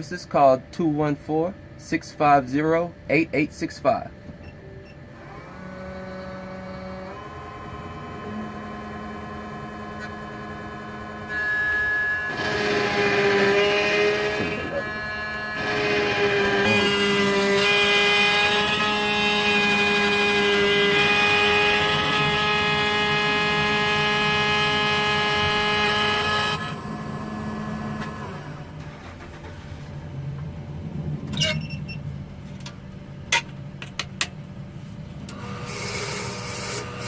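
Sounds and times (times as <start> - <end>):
key-cutting machine whine: 4.4 - 28.8, 35.3 - 37.0.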